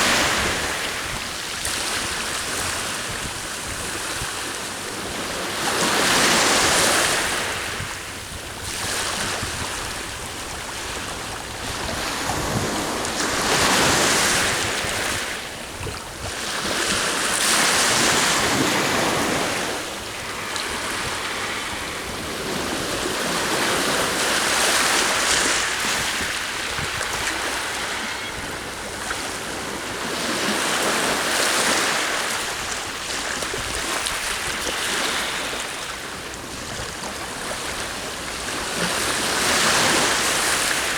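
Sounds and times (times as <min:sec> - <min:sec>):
wind on microphone: 0:00.0 - 0:35.8
sea waves breaking on shore: 0:00.0 - 0:40.9.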